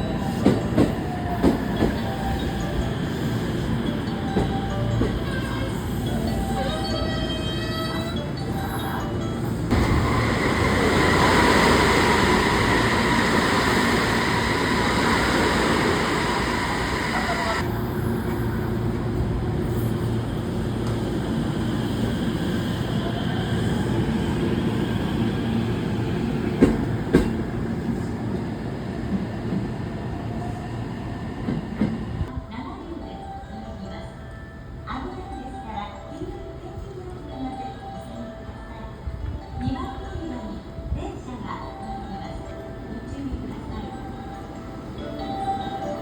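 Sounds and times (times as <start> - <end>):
electric train rumbling and whining: 0.0 - 32.6.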